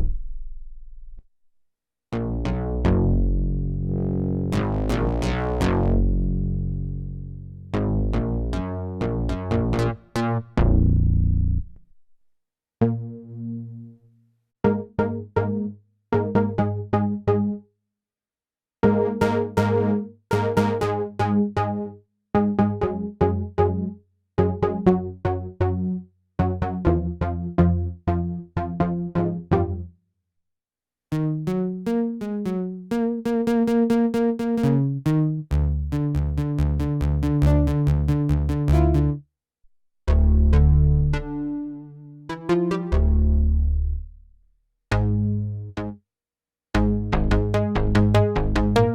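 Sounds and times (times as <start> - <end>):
synthesizer chords: 2.2 - 6.9, 31.1 - 39.2, 40.1 - 44.0, 44.9 - 46.0, 46.8 - 48.9
pulsing low bass note: 35.5 - 39.2, 40.1 - 41.4
sequenced synth pattern gliding notes: 35.9 - 39.2, 40.1 - 43.6.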